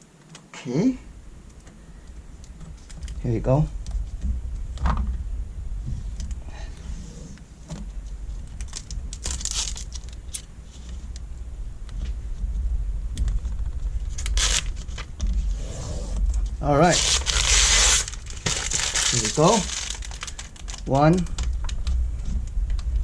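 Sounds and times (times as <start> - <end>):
steady low rumble: 0.0 - 23.0
tape rustling and tearing: 8.4 - 11.2, 13.3 - 15.7, 16.8 - 22.8.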